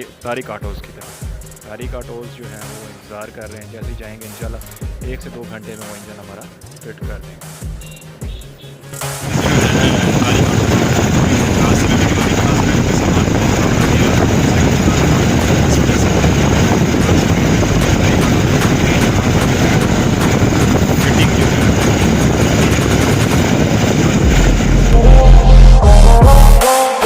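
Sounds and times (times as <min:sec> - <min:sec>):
music: 0:00.0 - 0:27.0
wind noise on microphone: 0:09.2 - 0:26.4
vehicle rumble: 0:09.3 - 0:26.5.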